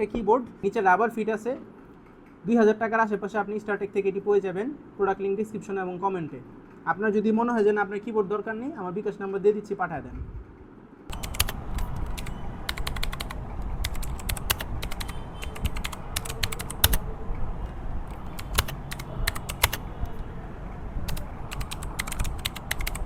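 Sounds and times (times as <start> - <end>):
mechanical keyboard typing clicks: 11.1 - 17.1, 18.0 - 20.2, 21.0 - 23.0.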